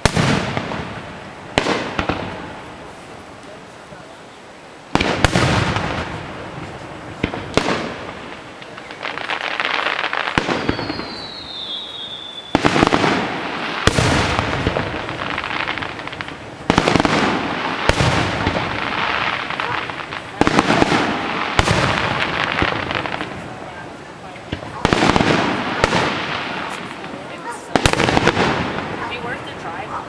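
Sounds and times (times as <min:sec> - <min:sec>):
fireworks bangs: 0:00.0 - 0:04.0, 0:04.9 - 0:30.0
falling firework whistle: 0:10.3 - 0:13.2.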